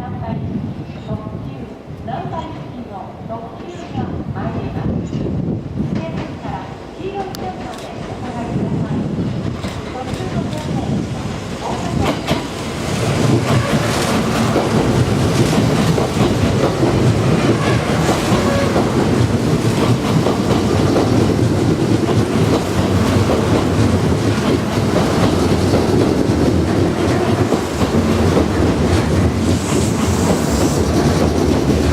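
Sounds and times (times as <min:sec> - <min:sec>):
train running rumble: 0:07.2 - 0:31.9
train wheels clacking over rail joints: 0:09.4 - 0:11.0, 0:11.6 - 0:31.9.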